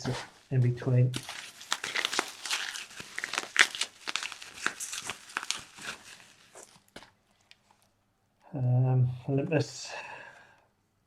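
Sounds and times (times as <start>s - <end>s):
packaging crinkling: 1.1s - 7.9s.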